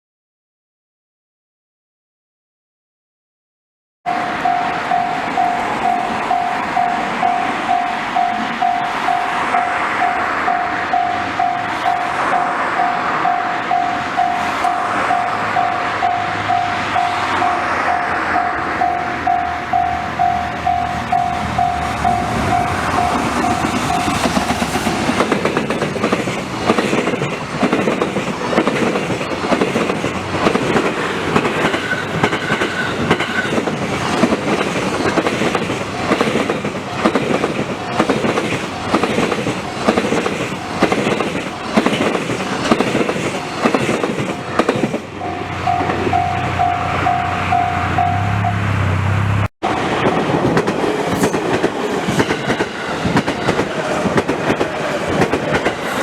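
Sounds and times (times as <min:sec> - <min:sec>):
level-crossing alarm ringing: 0:04.1 - 0:24.2, 0:44.2 - 0:48.6
train passing: 0:04.1 - 0:56.0
wheels clicking over rail joints: 0:49.7 - 0:56.0.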